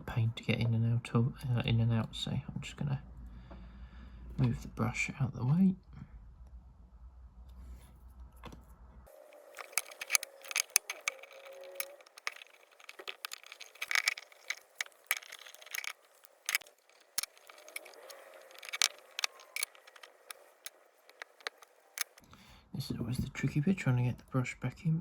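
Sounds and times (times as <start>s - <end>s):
metal tool clicking and scraping: 9.4s - 22.2s.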